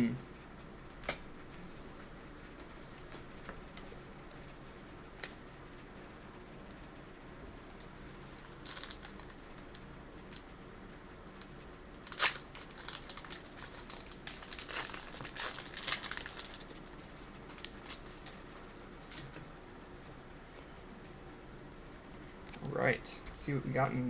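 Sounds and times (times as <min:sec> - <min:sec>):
foil wrapper crinkling: 0:07.6 - 0:10.5, 0:11.4 - 0:19.4.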